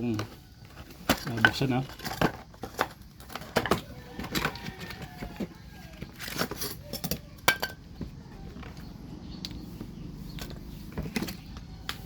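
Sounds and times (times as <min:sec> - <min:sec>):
packaging clicks and knocks: 0:00.2 - 0:08.8.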